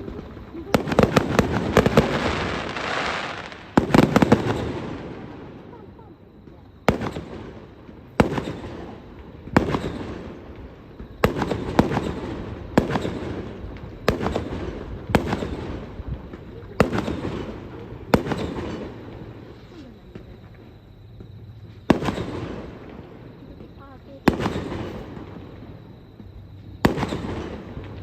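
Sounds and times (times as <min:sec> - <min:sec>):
firework shells bursting: 0:00.0 - 0:05.6.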